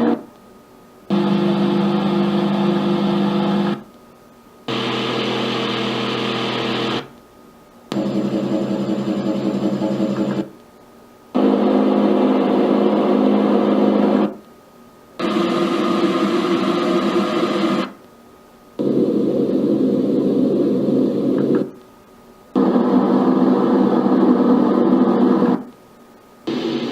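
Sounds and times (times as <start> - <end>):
white noise machine rushing: 26.5 - 26.9.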